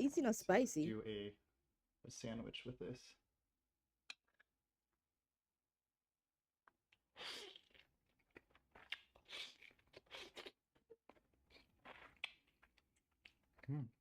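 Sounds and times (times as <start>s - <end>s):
wet chewing and crunching: 7.4s - 13.7s.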